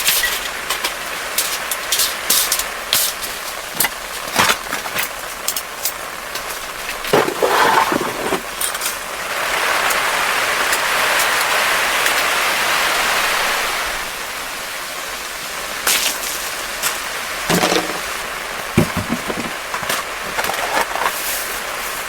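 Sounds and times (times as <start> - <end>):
rushing water: 0.0 - 21.1.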